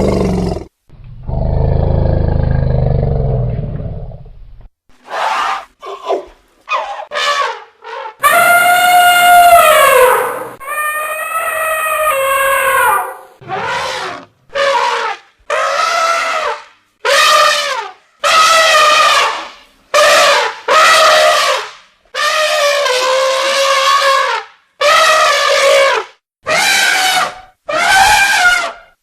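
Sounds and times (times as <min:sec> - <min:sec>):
elephant trumpeting: 0:06.7 - 0:21.6, 0:22.2 - 0:28.9.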